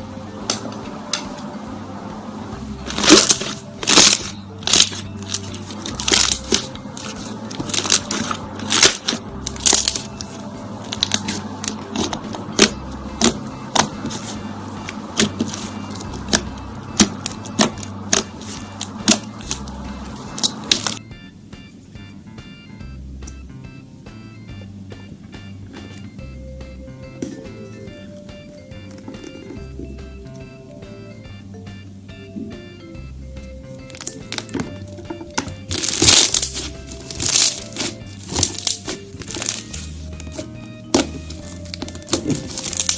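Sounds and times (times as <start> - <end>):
quiet background music: 0.0 - 42.9
slime popping and crackling: 2.8 - 21.0, 33.9 - 42.9.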